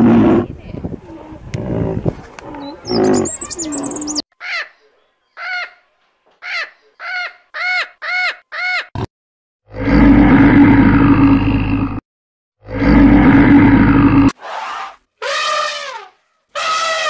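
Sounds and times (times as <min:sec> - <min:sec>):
low animal calls: 0:01.0 - 0:04.2, 0:14.2 - 0:17.0.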